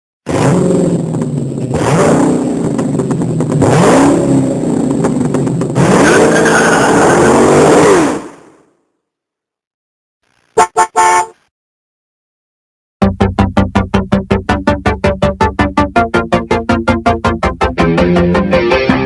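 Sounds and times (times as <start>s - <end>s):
car engine revving: 0.3s - 8.6s.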